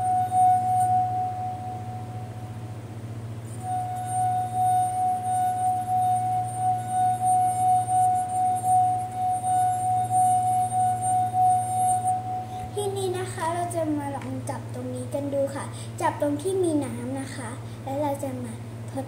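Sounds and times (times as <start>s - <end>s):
glass rim ringing: 0.0s - 2.4s, 3.5s - 12.6s.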